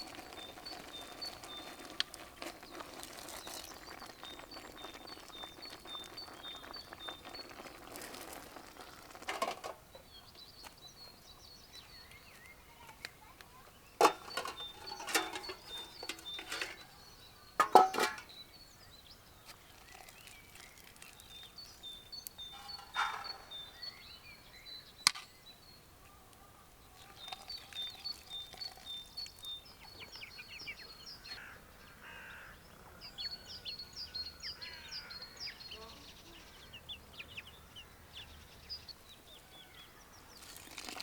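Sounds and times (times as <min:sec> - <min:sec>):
rustling or scraping noises: 0:00.0 - 0:09.9, 0:14.0 - 0:18.3, 0:19.5 - 0:24.0
small birds chirping trills: 0:00.0 - 0:41.0.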